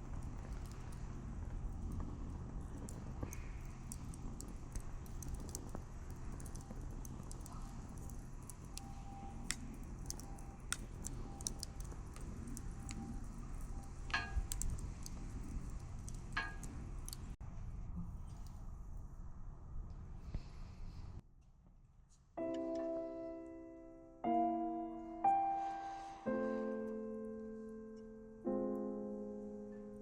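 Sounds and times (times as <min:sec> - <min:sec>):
wood fire crackling: 0:00.0 - 0:17.4
low steady rumble: 0:00.0 - 0:21.2.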